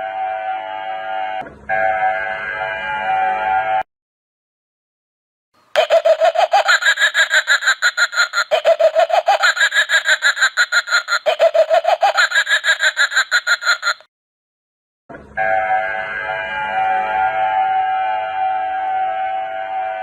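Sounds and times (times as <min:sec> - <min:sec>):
harsh stuttering distorted effect: 0:05.8 - 0:14.0.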